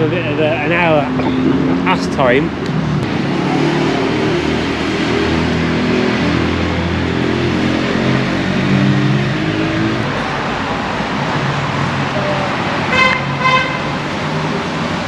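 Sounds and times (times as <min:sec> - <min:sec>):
vehicle engine hum: 0:00.0 - 0:15.0
car horn toots: 0:12.9 - 0:14.0.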